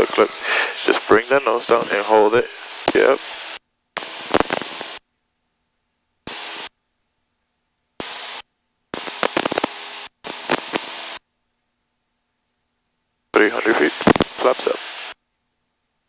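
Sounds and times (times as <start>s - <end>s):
headset hiss and cockpit noise: 0.0s - 5.4s, 6.2s - 6.8s, 7.9s - 11.4s, 12.2s - 16.0s.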